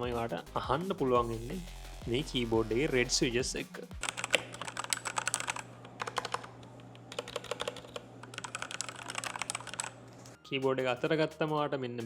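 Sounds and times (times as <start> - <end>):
mechanical keyboard typing: 3.8 - 10.0.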